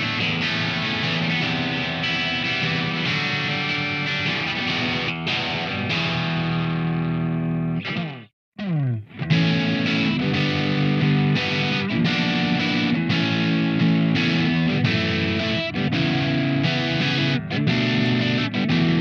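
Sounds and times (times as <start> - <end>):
distorted electric guitar chords: 0.0 - 19.0.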